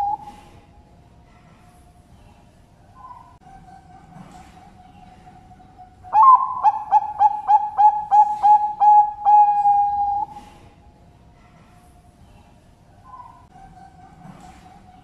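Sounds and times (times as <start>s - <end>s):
dove cooing: 0.0s - 0.6s, 4.1s - 10.6s.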